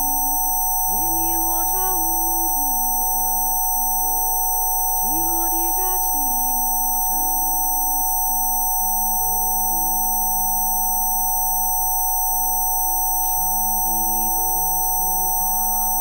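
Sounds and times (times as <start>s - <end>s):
steady pure tones: 0.0s - 3.9s
soft ambient music: 13.0s - 16.0s.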